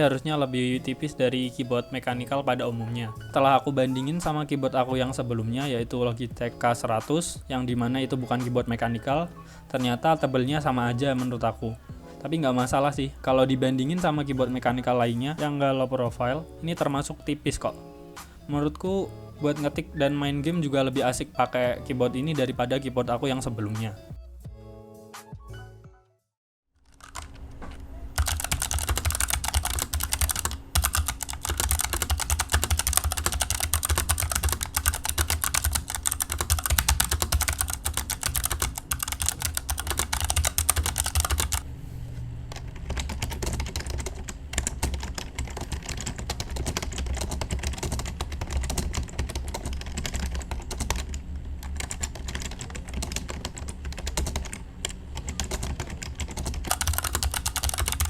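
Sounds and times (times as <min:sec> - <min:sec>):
clicky keyboard typing: 0:26.9 - 0:27.4, 0:28.2 - 0:41.6, 0:42.5 - 0:58.0.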